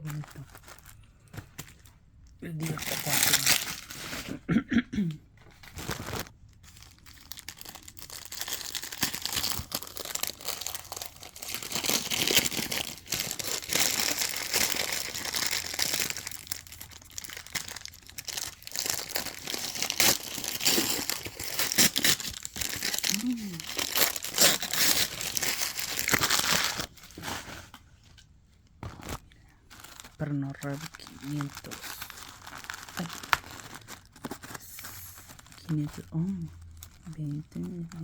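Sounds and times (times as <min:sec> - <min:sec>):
packaging crinkling and tearing: 0:00.0 - 0:01.9, 0:02.6 - 0:04.4, 0:05.4 - 0:27.8, 0:28.8 - 0:38.0.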